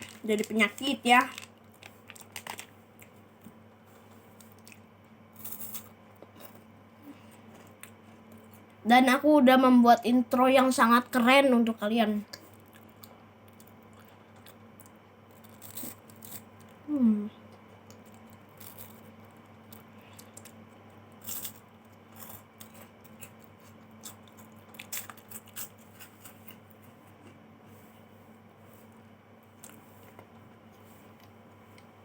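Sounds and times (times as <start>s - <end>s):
steady low hum: 0.0s - 32.0s
chewing crunchy wafer: 12.4s - 16.8s, 17.5s - 27.4s
person humming: 16.9s - 17.4s.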